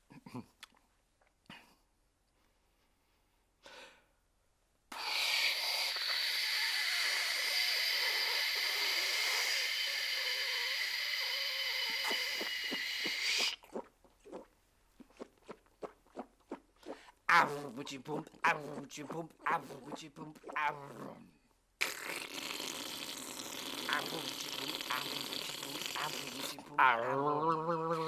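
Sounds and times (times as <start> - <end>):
man imitating washing machine: 5.0 - 13.6, 17.3 - 21.2, 21.8 - 28.0.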